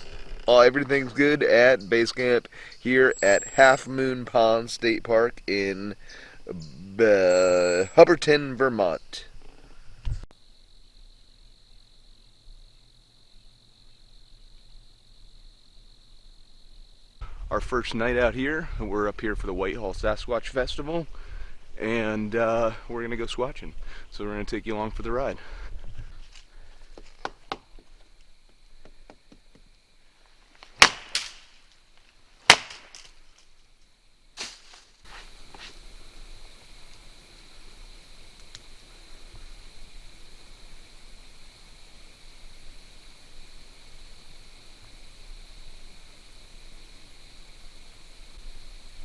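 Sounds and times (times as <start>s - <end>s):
crickets trilling: 0.0s - 49.0s
faint high whine: 6.5s - 9.0s
wood being struck: 30.7s - 31.4s, 32.4s - 33.1s.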